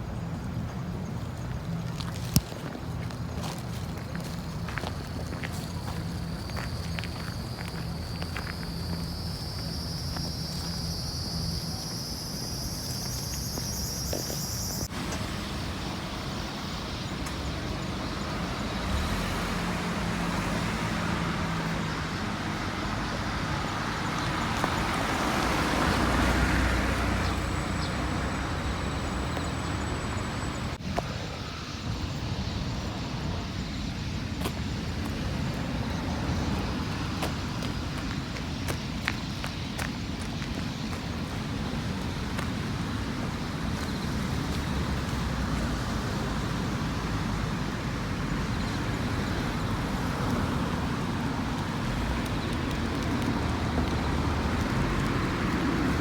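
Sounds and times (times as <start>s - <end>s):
vehicle passing: 2.9s - 30.9s, 41.1s - 56.0s.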